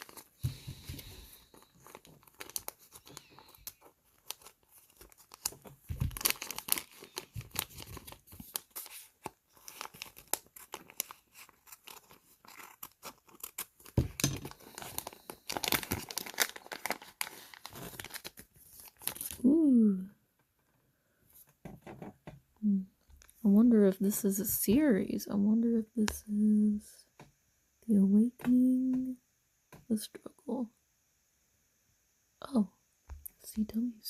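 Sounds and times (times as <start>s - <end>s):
plastic packaging tearing: 0.0s - 0.5s, 1.3s - 19.4s
plastic crinkling: 0.0s - 19.5s.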